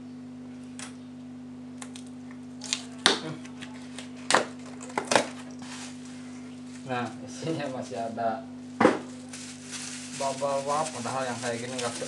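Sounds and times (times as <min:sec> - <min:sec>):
steady electrical hum: 0:00.0 - 0:12.0
plastic packaging crackling: 0:04.7 - 0:08.0, 0:08.6 - 0:12.0.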